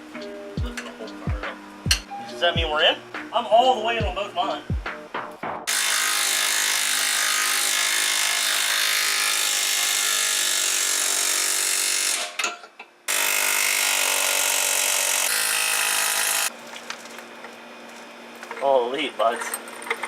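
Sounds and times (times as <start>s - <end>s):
power tool running: 5.7s - 12.4s, 13.1s - 16.5s.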